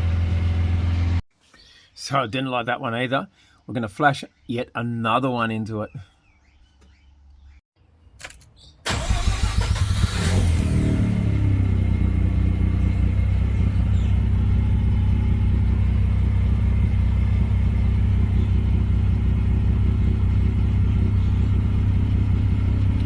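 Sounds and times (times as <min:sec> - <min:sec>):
rotary engine idling: 0:08.9 - 0:23.0.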